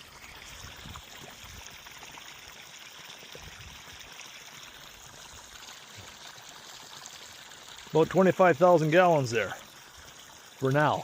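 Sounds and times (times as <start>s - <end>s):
water pouring into pond: 0.0s - 11.0s.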